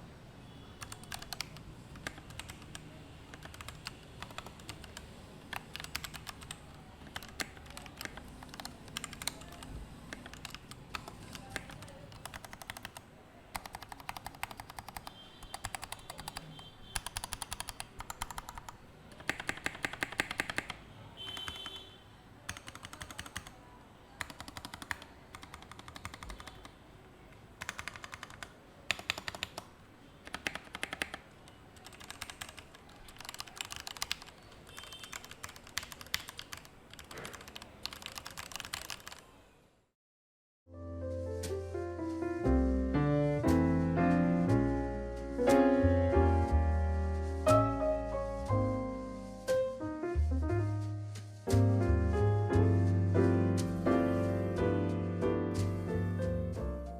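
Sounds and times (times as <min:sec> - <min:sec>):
mechanical keyboard keystroke clicks: 0:00.8 - 0:16.4, 0:17.0 - 0:21.7, 0:22.5 - 0:23.6, 0:24.2 - 0:26.7, 0:27.6 - 0:31.2, 0:31.8 - 0:39.2.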